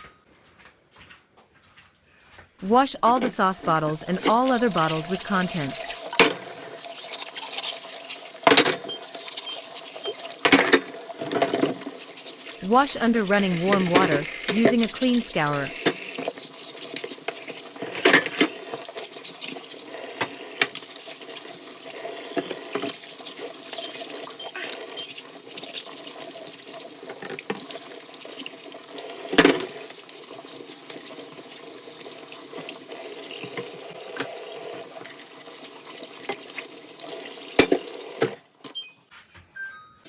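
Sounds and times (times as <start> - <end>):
scourer scrubbing bottles: 3.1 - 27.7
tap water running into sink: 3.6 - 38.4.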